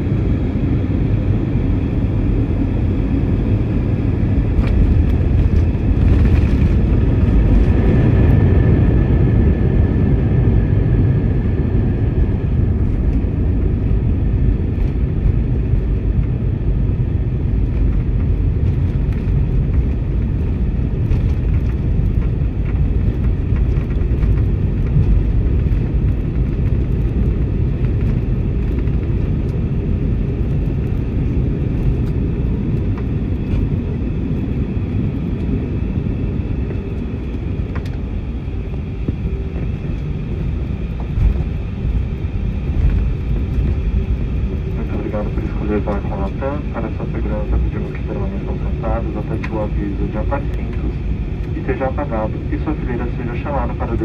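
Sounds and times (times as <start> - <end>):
airliner engines and wheels rumbling: 0.0 - 54.0
faint whine: 36.0 - 54.0.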